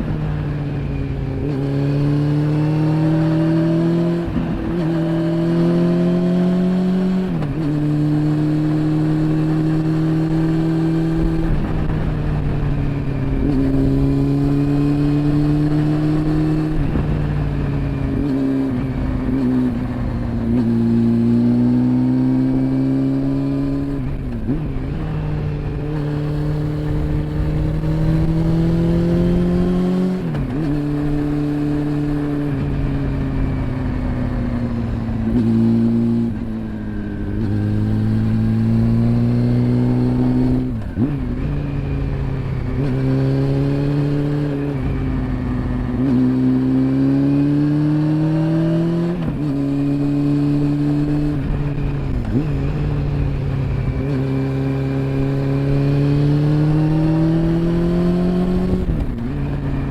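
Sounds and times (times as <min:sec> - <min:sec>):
motorcycle engine revving: 0:00.0 - 0:59.9.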